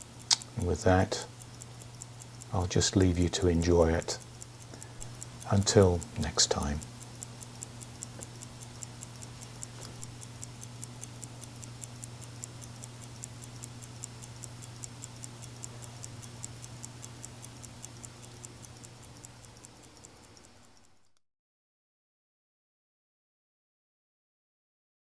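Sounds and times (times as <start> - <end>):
low steady hum: 0.0 - 21.0
pocket watch ticking: 0.0 - 21.2.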